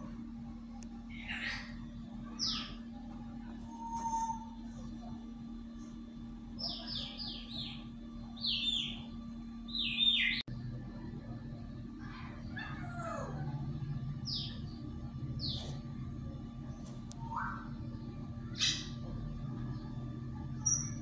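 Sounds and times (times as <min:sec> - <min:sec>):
steady low hum: 0:00.0 - 0:21.0
bird chirping: 0:01.1 - 0:02.8, 0:06.6 - 0:09.1, 0:09.7 - 0:10.4, 0:14.2 - 0:14.8, 0:17.2 - 0:17.8, 0:18.5 - 0:19.0.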